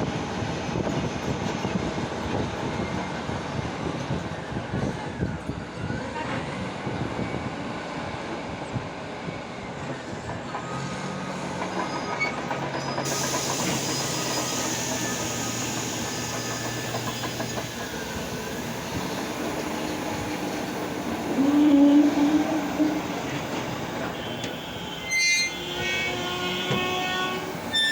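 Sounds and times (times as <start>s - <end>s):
steel tracks clanking: 10.2s - 27.9s.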